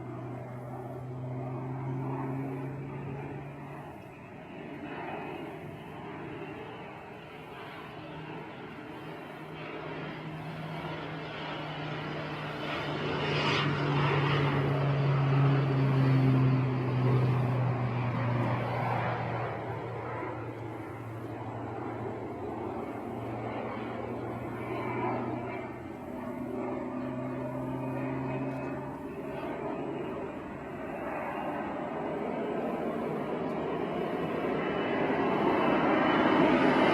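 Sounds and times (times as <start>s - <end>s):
airplane engine drone passing: 0.0s - 36.9s.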